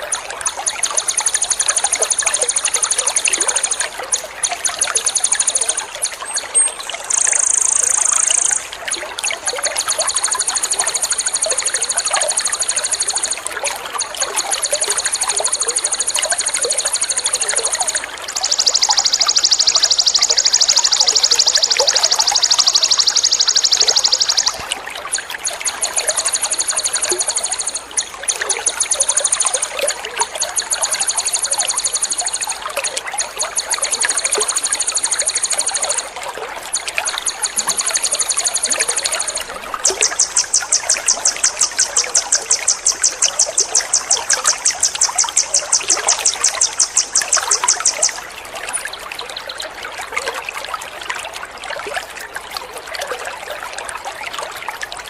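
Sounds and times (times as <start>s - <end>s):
water trickling: 0.0s - 55.0s
songbird high trills: 6.6s - 8.7s, 14.5s - 24.7s, 36.8s - 48.8s.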